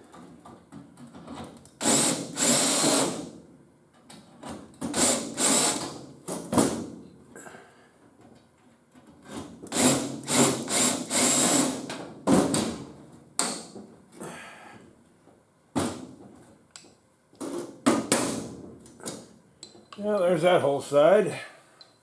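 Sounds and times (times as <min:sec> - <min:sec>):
power tool bursts on sheet metal: 0:01.8 - 0:03.3, 0:04.9 - 0:06.0, 0:09.7 - 0:11.9.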